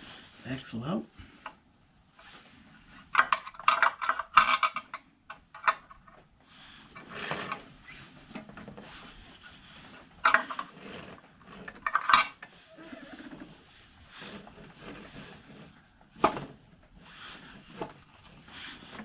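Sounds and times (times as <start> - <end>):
metal parts clinking and scraping: 3.2 - 6.1, 10.2 - 12.6.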